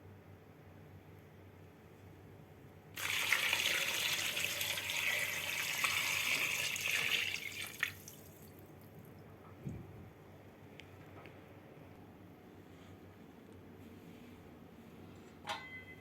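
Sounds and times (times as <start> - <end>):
water running from a tap: 3.0 - 8.4.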